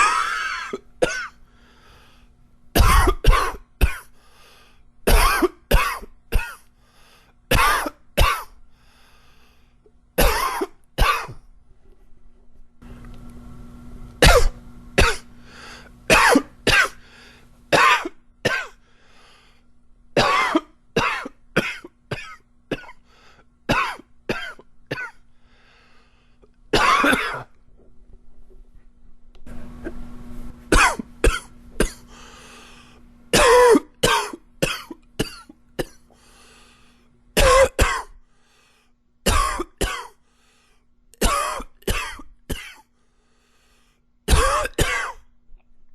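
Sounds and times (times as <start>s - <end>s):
man coughing hard: 0.0s - 1.4s, 2.8s - 4.1s, 5.1s - 6.7s, 7.5s - 8.6s, 10.2s - 11.4s, 14.2s - 15.3s, 16.1s - 17.0s, 17.7s - 18.8s, 20.2s - 23.0s, 23.7s - 25.2s, 26.8s - 27.5s, 30.7s - 32.1s, 33.3s - 36.1s, 37.4s - 38.2s, 39.3s - 40.2s, 41.2s - 42.9s, 44.3s - 45.2s.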